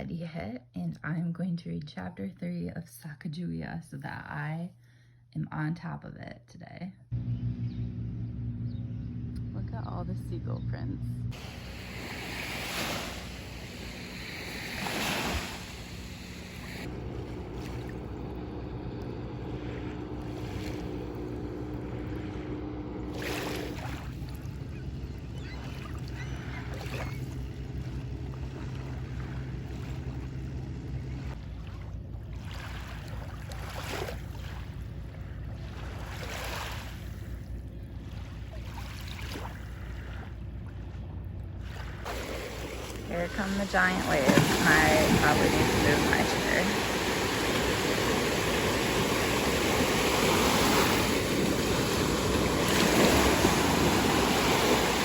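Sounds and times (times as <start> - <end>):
faint low drone: 7.1 - 55.0
small waves washing onto beach: 11.3 - 24.6, 41.6 - 55.0.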